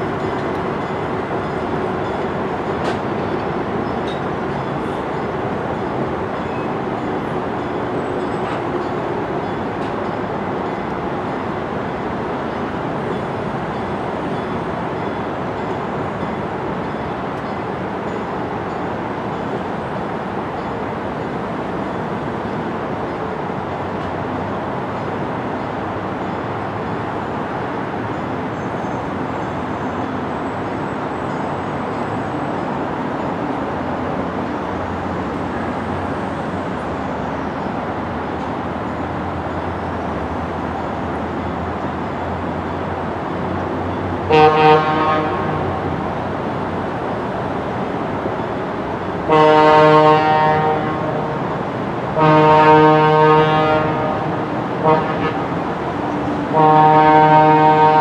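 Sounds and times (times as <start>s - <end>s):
low rumble of train: 0.0s - 58.0s
locomotive air horn blasts: 44.2s - 45.8s, 49.3s - 51.4s, 52.2s - 55.6s, 56.5s - 58.0s.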